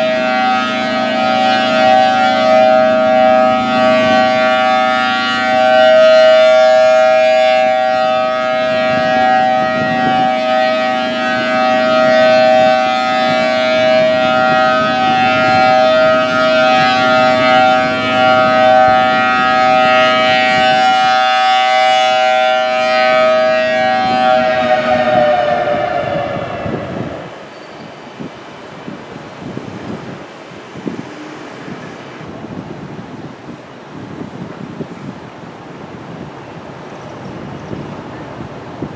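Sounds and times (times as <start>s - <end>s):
rotating warning siren tone: 0.0s - 30.2s.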